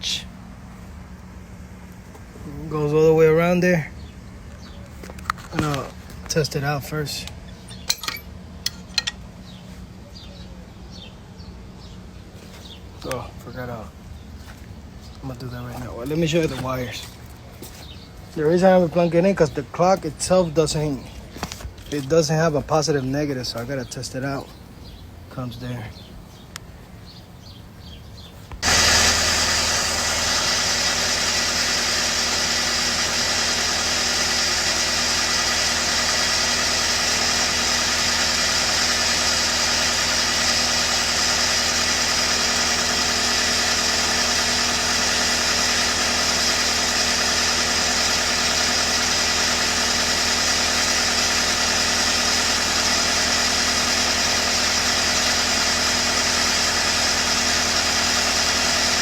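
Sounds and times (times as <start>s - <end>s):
welder engine running: 0.0s - 9.6s, 28.5s - 59.0s.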